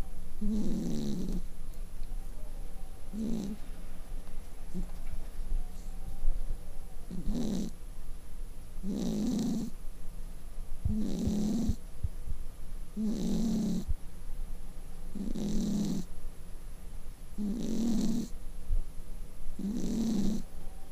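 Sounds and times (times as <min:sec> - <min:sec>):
cat snoring: 0:00.4 - 0:01.5, 0:03.1 - 0:03.6, 0:07.1 - 0:07.8, 0:08.8 - 0:09.8, 0:10.9 - 0:11.8, 0:13.0 - 0:13.9, 0:15.1 - 0:16.1, 0:17.4 - 0:18.3, 0:19.6 - 0:20.5.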